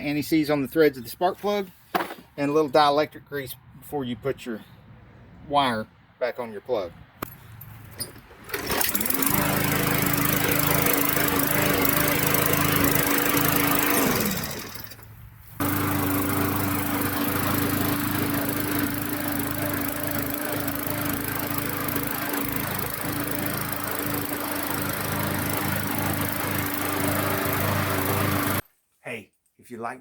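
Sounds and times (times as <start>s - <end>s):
lawn mower engine running: 8.3s - 28.6s.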